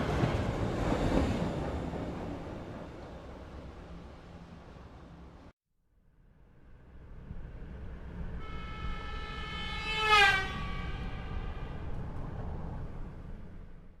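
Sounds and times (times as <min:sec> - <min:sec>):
train wheels rumbling on track: 0:00.0 - 0:05.4, 0:09.7 - 0:14.0
train horn: 0:08.1 - 0:13.0.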